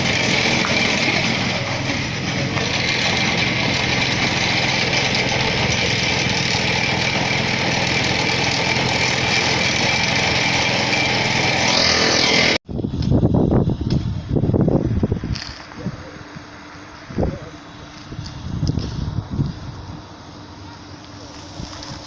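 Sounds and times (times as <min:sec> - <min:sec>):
machinery engine running with hiss: 0:00.0 - 0:12.6, 0:14.2 - 0:22.0
wind buffeting microphone: 0:12.6 - 0:20.2.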